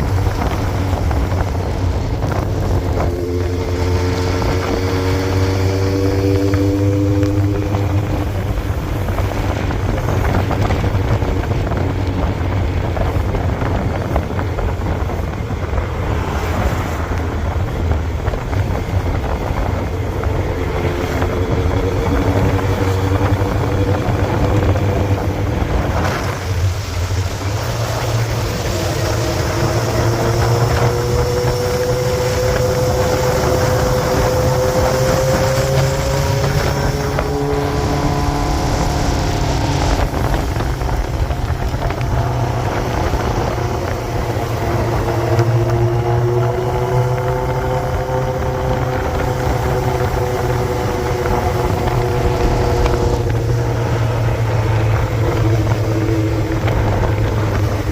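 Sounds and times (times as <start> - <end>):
engine running low rumble: 0.0 - 57.9.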